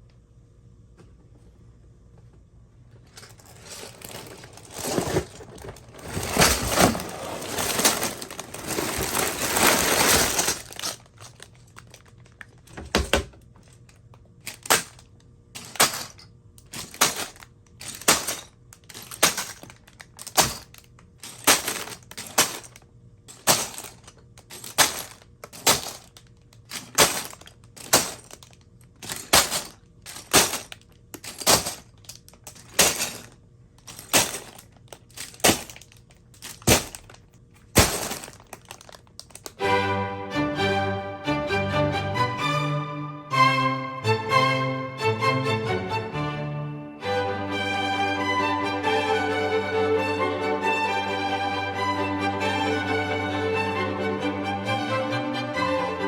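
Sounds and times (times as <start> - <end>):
plastic bags crinkling and tearing: 3.5 - 12.7, 23.4 - 39.6.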